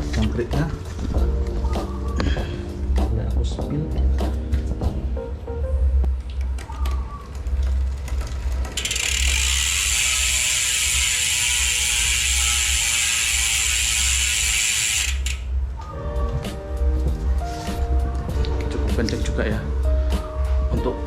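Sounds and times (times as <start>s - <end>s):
bicycle freehub ticking: 7.4s - 15.6s.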